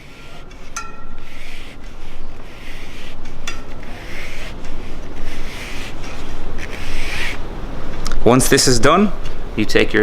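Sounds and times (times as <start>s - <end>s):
fingers scraping inside tyre: 0.0s - 7.4s.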